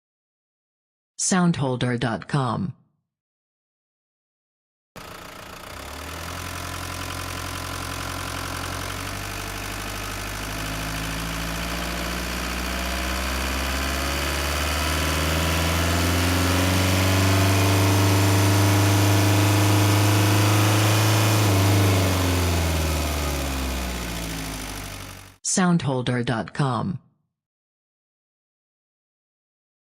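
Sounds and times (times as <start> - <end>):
diesel engine accelerating: 5.0 - 25.4.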